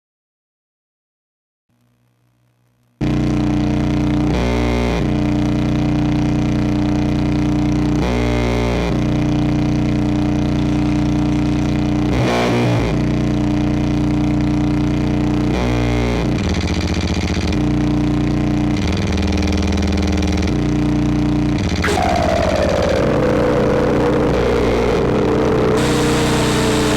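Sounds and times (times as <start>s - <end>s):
distorted electronic drone: 21.6s - 26.9s
falling pitch sweep: 21.8s - 26.9s.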